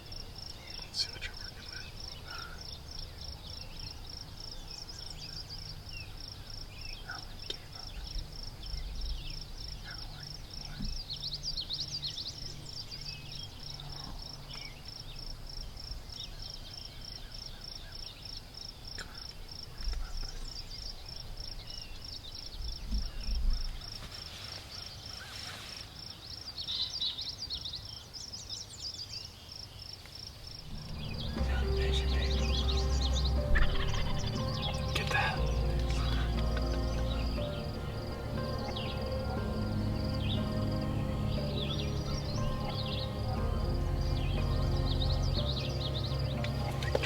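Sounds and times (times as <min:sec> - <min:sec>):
songbirds chirping: 0:00.0 - 0:47.0
pulsing insect trill: 0:30.6 - 0:47.0.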